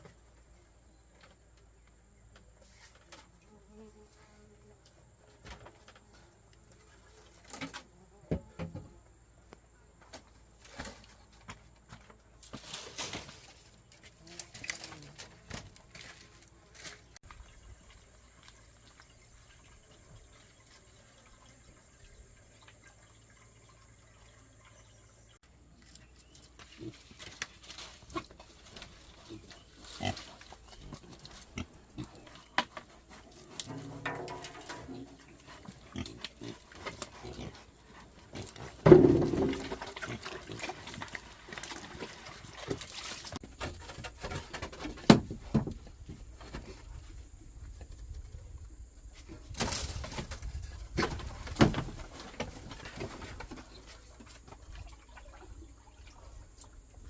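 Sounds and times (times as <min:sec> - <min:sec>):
pigs grunting: 0:29.0 - 0:42.8
knocks and clatter: 0:33.5 - 0:35.3, 0:38.6 - 0:40.2.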